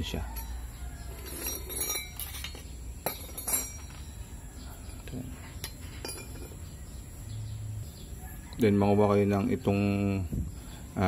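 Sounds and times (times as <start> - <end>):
steel parts clinking: 0.3 - 4.2, 4.9 - 6.6.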